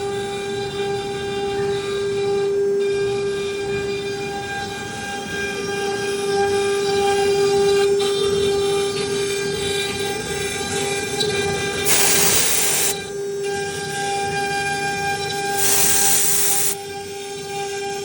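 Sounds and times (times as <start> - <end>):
router spindle whine: 5.4 - 18.0
loud rushing hiss: 11.9 - 13.0, 15.6 - 16.8.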